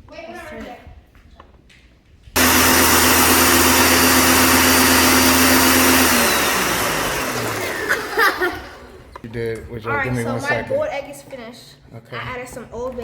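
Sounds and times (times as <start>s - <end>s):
appliance motor whining: 2.4s - 9.2s.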